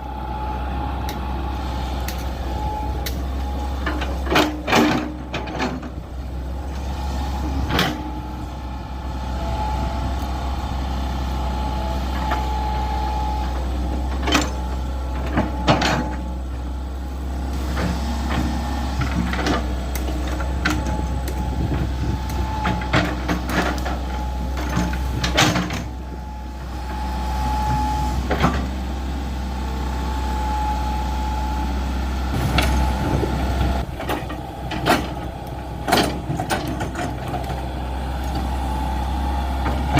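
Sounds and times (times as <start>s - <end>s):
excavator diesel engine: 0.0s - 39.9s.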